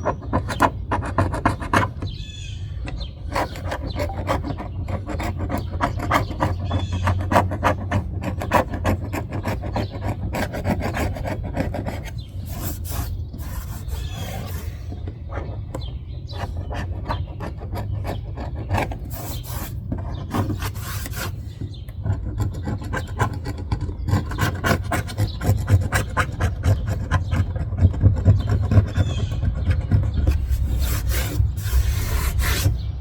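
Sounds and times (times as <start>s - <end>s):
hand scraper scraping adhesive: 0.0s - 32.9s
steady low hum: 30.2s - 33.0s.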